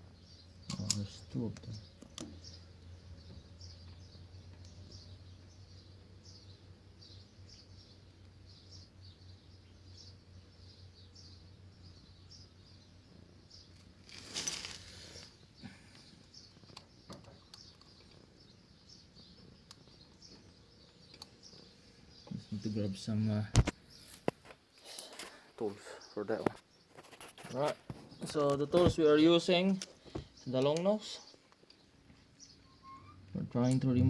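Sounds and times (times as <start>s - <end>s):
small bird chirps: 0.0s - 34.0s
rustling scrape: 14.0s - 15.4s, 26.9s - 28.2s.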